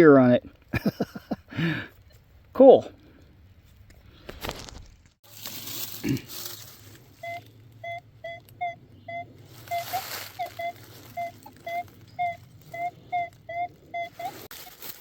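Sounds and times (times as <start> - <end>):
metal detector beeping: 6.8 - 14.8.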